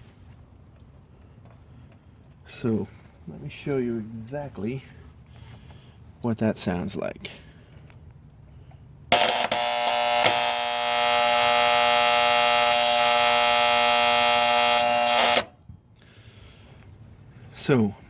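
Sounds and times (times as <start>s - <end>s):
contactor buzzing: 9.1s - 15.6s.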